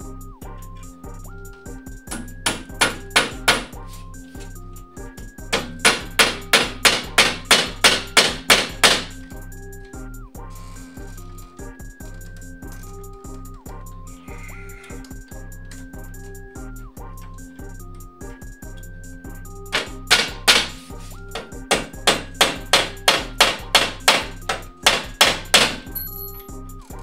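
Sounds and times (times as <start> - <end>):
background music with steady beat: 0.0 - 27.0
hammer striking: 2.1 - 3.8, 5.5 - 9.4, 19.7 - 26.4.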